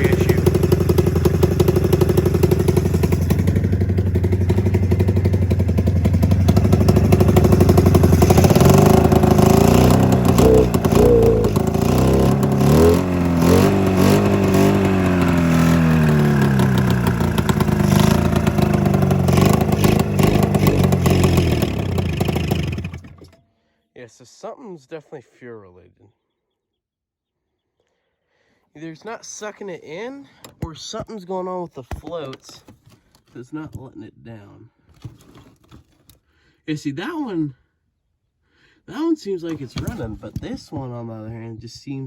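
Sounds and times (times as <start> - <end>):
snowmobile engine idling unevenly: 0.0 - 23.1.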